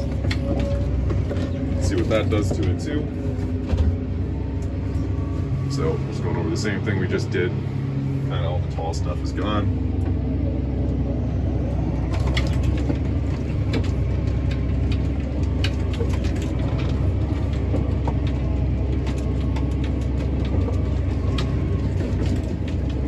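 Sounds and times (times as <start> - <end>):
tractor engine under load: 0.0 - 23.0
implement clicks and rattles: 12.0 - 23.0.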